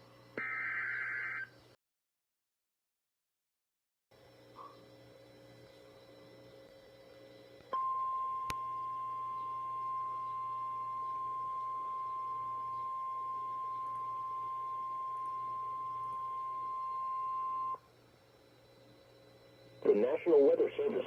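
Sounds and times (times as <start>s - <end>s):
steady alarm beep: 7.8s - 17.9s.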